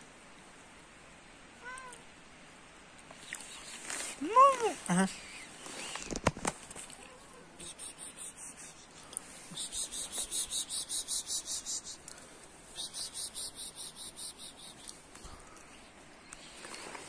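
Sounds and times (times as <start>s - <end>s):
insect chirping trill: 9.6s - 12.0s, 12.8s - 14.9s.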